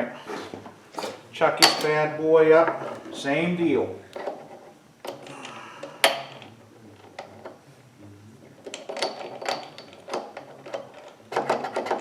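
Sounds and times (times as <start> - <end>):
metal clanks and clicks: 0.9 - 2.2, 6.0 - 6.5, 8.7 - 12.0
quick metal clinks: 1.0 - 2.0.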